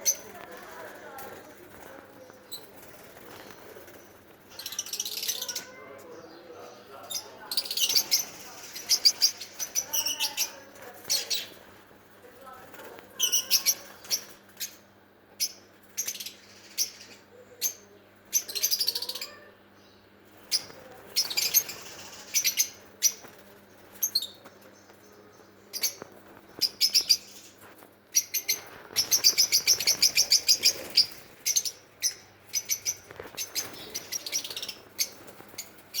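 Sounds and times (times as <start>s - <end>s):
lovebirds chirping: 0.0s - 14.8s, 15.4s - 36.0s.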